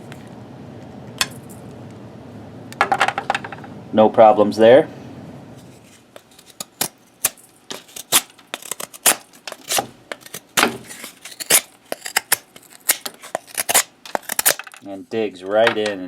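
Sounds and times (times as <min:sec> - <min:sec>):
knife scraping wood: 0:05.6 - 0:14.8.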